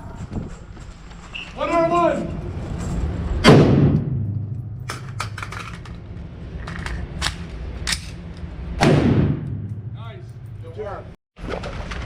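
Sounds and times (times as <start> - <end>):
rifle shot: 3.4 - 5.0, 8.8 - 9.8.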